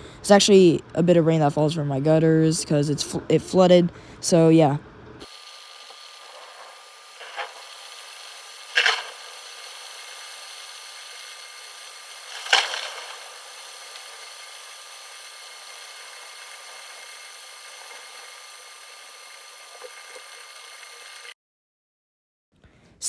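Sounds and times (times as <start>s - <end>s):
heavy rain hissing: 5.2s - 21.3s
water spilling from gutters: 5.2s - 21.3s.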